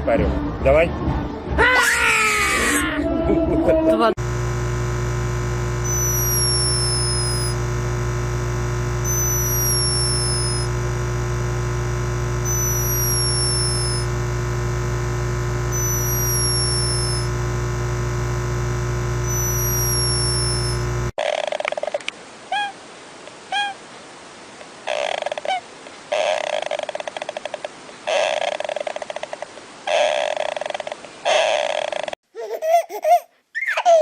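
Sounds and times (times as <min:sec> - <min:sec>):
electronic drone: 0:04.2 - 0:21.1
high falling chirp: 0:05.8 - 0:07.6, 0:09.0 - 0:10.7, 0:12.4 - 0:14.1, 0:15.7 - 0:17.3, 0:19.2 - 0:20.9.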